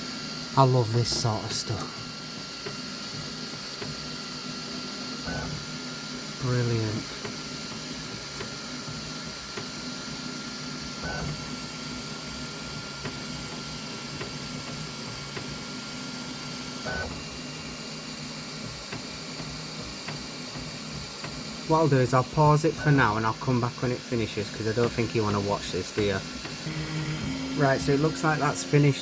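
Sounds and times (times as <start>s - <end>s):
hum of fans and motors: 0.0s - 29.0s
thin high whine: 21.7s - 29.0s.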